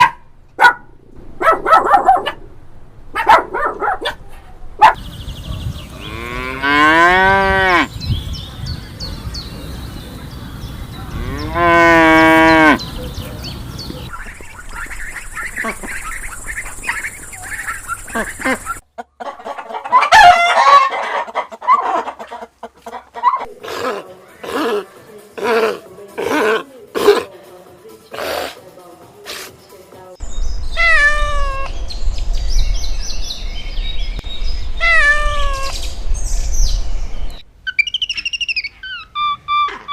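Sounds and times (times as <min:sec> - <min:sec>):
cow mooing: 0:06.0 - 0:07.9, 0:11.1 - 0:12.8
poultry calls: 0:11.1 - 0:25.0.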